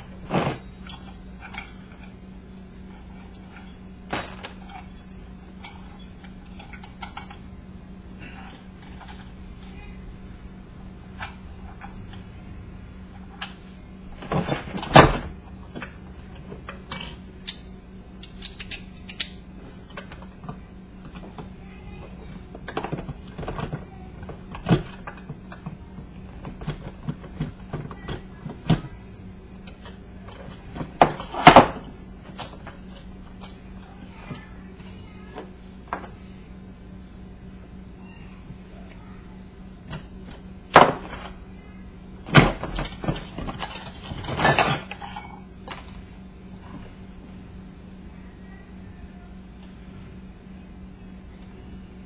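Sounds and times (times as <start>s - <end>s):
faint steady hum: 0.0s - 52.0s
metal parts clicking and knocking: 0.3s - 2.2s, 2.9s - 7.4s, 8.2s - 9.4s, 14.2s - 21.4s, 22.6s - 28.8s, 29.6s - 33.9s, 42.3s - 46.0s
metal clatters: 8.2s - 9.4s, 42.4s - 46.0s.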